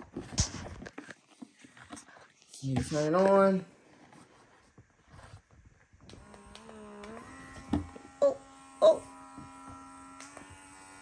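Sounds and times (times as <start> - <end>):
small vacuum motor buzzing: 6.0 - 11.0.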